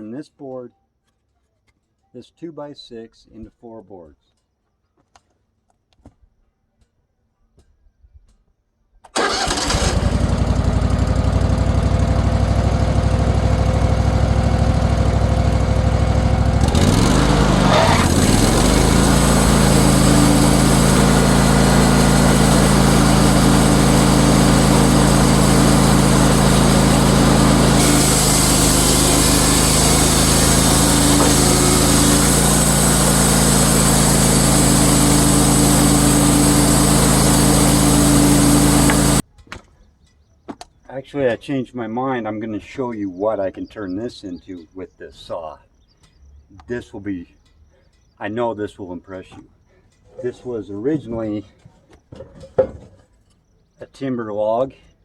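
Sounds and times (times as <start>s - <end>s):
sawmill engine running: 9.2s - 39.2s.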